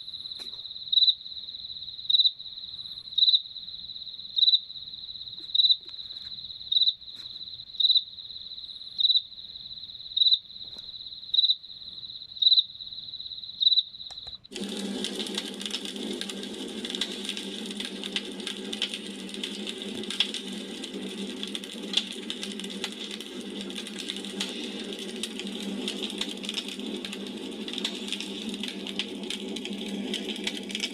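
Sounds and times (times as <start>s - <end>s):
cricket chirping: 0.0s - 30.9s
campfire crackling and popping: 14.5s - 30.9s.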